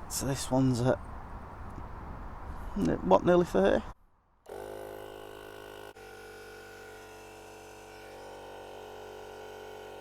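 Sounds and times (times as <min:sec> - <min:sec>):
air compressor motor buzz: 0:04.5 - 0:10.0.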